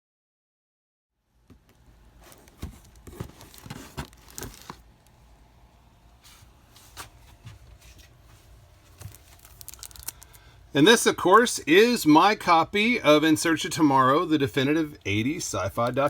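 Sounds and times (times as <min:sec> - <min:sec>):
paper and packaging rustling: 0:02.2 - 0:04.9, 0:06.3 - 0:10.5.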